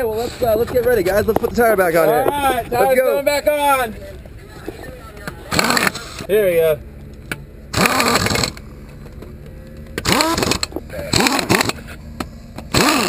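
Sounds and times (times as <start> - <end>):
voices shouting: 0.9 - 6.6
loud noisy burst: 7.7 - 8.6, 10.0 - 11.8, 12.7 - 13.0
small motor humming: 7.7 - 8.6, 10.0 - 13.0.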